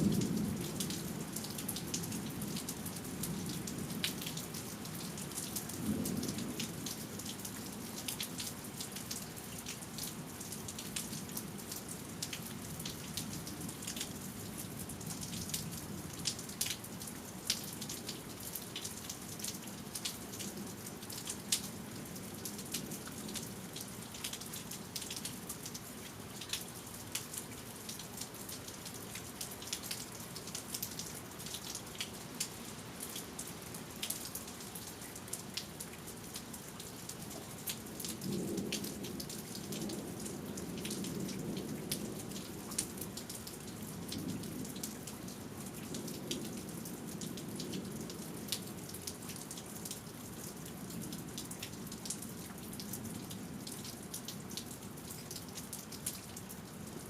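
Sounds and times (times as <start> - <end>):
raindrops ticking close by: 0.0 - 57.0
steady rain falling: 0.0 - 57.0.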